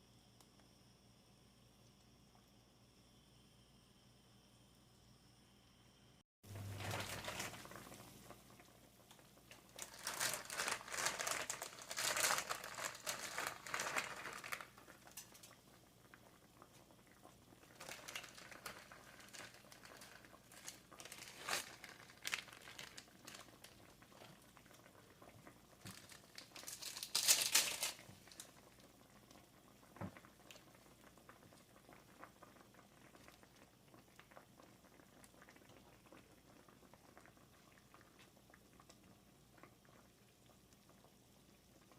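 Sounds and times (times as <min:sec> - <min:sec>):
crinkling and rustling: 0:06.5 - 0:15.6, 0:17.6 - 0:28.6.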